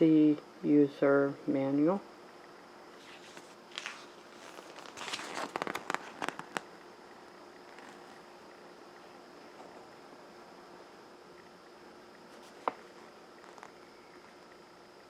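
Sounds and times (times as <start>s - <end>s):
packaging crinkling: 3.0s - 6.7s, 12.4s - 13.8s.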